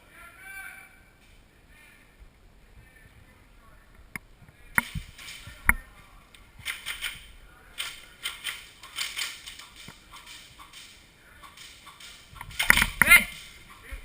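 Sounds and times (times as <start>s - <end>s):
airsoft gun shots: 7.8s - 13.6s.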